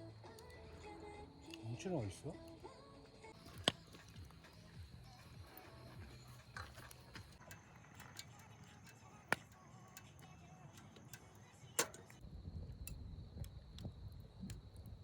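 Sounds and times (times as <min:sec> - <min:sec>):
high insect trill: 0:00.0 - 0:15.0
sharp clicks: 0:06.4 - 0:12.2.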